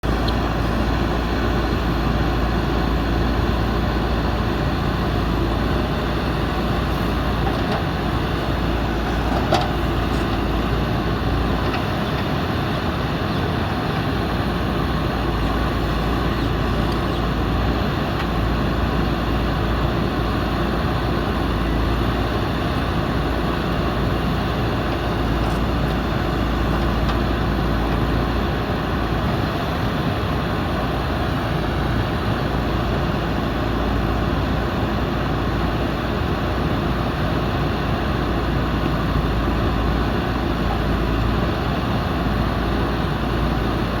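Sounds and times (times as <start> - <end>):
diesel engine running: 0.0 - 44.0.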